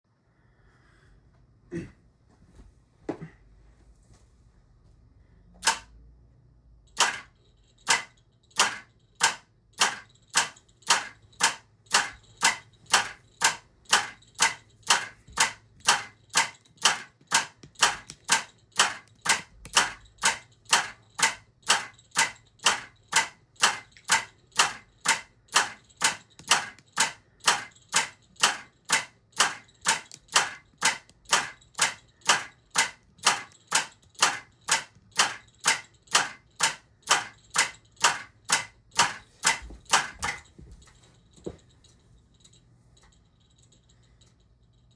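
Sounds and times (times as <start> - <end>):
sharp mechanical clicks: 5.6 - 6.0, 6.8 - 40.5.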